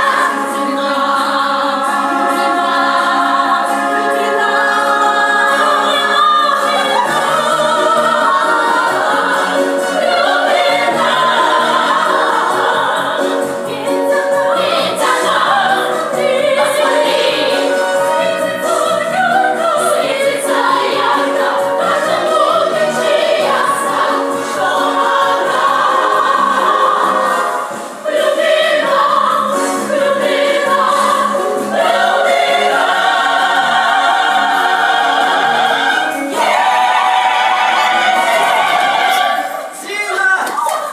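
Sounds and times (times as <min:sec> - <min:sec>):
group of voices singing in chorus: 0:00.0 - 0:39.8
musical accompaniment: 0:00.0 - 0:40.0.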